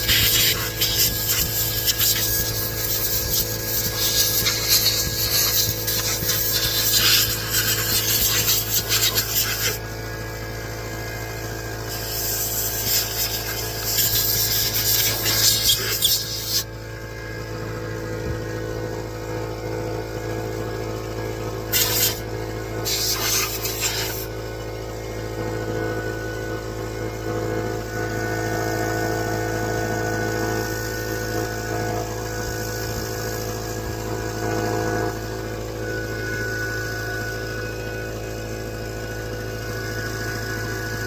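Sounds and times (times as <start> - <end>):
hand tool rasping and scraping: 22.8 - 24.3.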